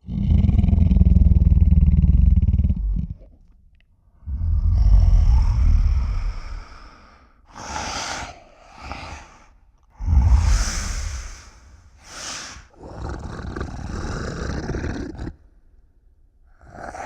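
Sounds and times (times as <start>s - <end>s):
monster deep growl: 0.0s - 3.2s, 4.2s - 6.8s, 7.5s - 15.4s, 16.6s - 17.0s
breath-like hisses: 4.7s - 15.3s.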